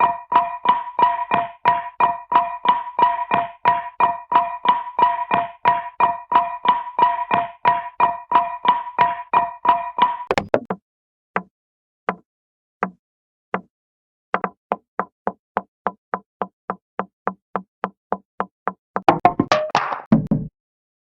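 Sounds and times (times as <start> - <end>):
ringing cartoon strike: 0.0 - 10.5
cartoon knocks: 0.0 - 10.8, 19.0 - 20.5.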